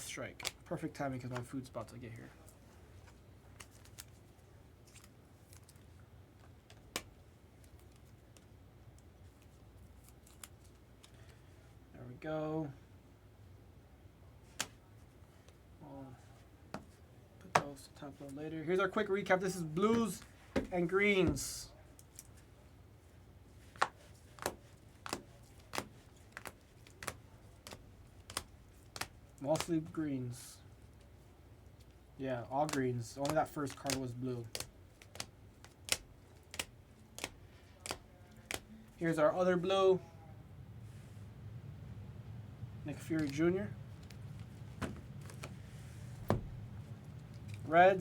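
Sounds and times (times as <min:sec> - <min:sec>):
trading cards clicking and rustling: 0:16.8 - 0:22.4, 0:23.6 - 0:30.0, 0:31.8 - 0:39.2, 0:42.9 - 0:47.8.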